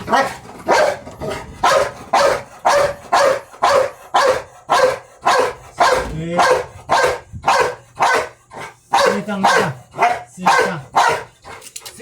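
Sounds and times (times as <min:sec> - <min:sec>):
dog barking: 0:00.0 - 0:11.4.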